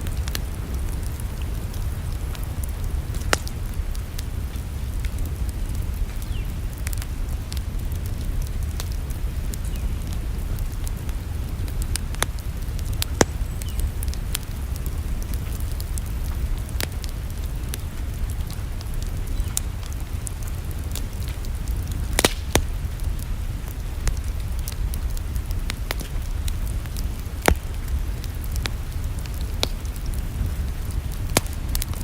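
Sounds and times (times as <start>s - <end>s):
wood fire crackling and popping: 0.0s - 32.0s.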